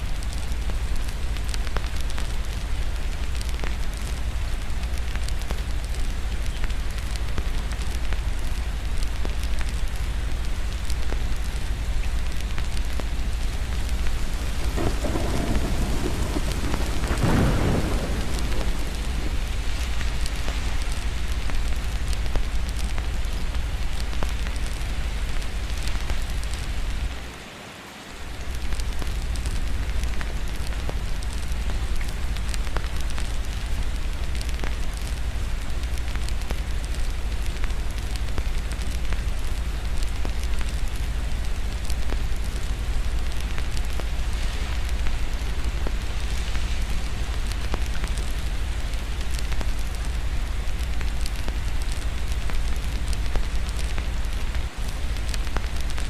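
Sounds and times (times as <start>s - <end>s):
steady rain: 0.0s - 56.0s
fireplace crackling and popping: 0.1s - 27.3s, 28.4s - 56.0s
rumble of thunder: 13.2s - 23.0s.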